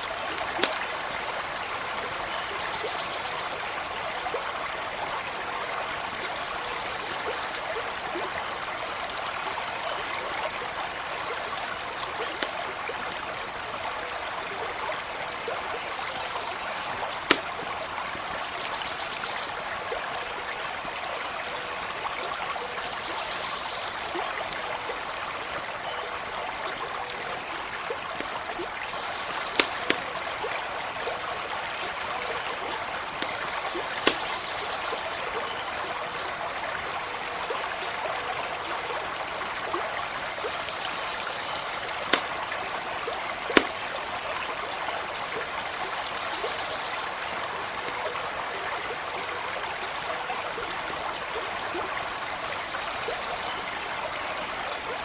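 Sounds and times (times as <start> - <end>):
stream running: 0.0 - 55.0
campfire crackling pops: 0.3 - 1.1, 7.5 - 13.9, 16.9 - 18.0, 26.7 - 36.4, 41.7 - 44.6, 49.1 - 49.6.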